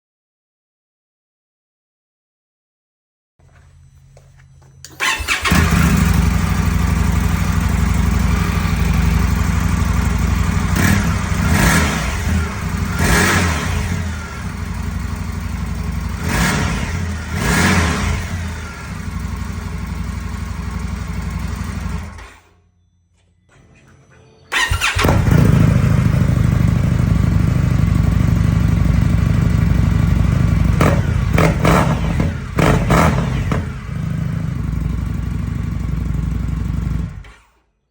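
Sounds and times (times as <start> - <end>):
motorcycle engine idling and revving: 4.9 - 22.6, 24.5 - 37.6.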